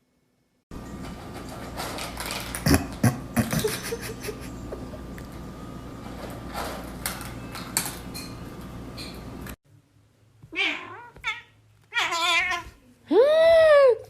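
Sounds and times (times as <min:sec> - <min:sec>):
steady background hum: 0:00.0 - 0:13.9
cat meowing: 0:10.5 - 0:12.8.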